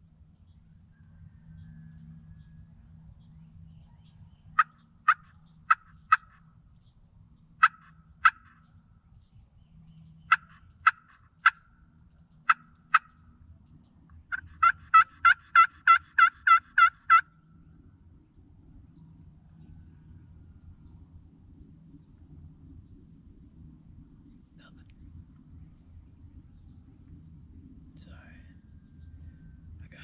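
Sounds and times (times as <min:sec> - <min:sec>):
turkey friction call hen yelps: 0:04.6 - 0:06.4, 0:07.6 - 0:08.6, 0:10.3 - 0:11.6, 0:12.5 - 0:13.2, 0:14.3 - 0:17.3.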